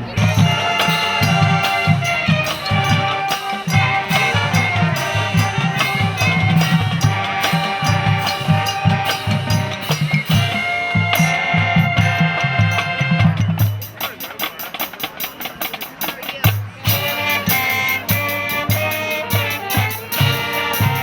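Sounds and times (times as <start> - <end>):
music with drum beat: 0.0 - 21.0.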